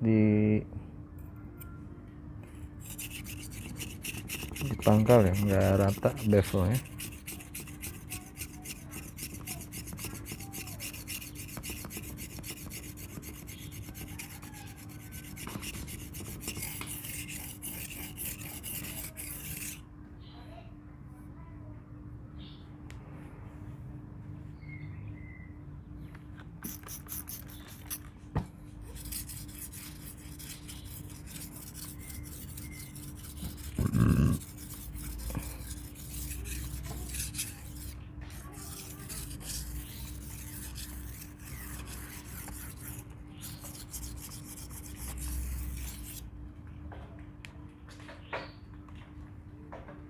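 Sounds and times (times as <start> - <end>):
knife sharpening on whetstone: 2.8 - 19.8, 26.6 - 28.0, 28.9 - 46.2.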